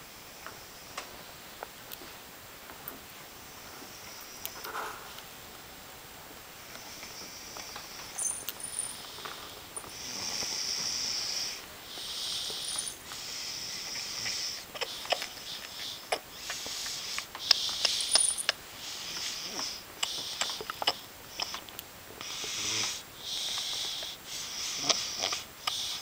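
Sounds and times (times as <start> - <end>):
wheezing snoring breaths: 6.7 - 26.0.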